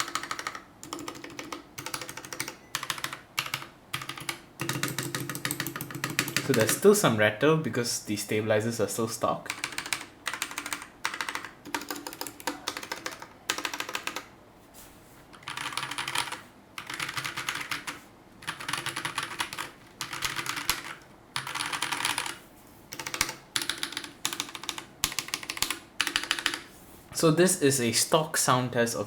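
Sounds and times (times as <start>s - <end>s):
mechanical keyboard clacking: 0.0s - 6.8s, 9.5s - 14.3s, 15.4s - 26.7s.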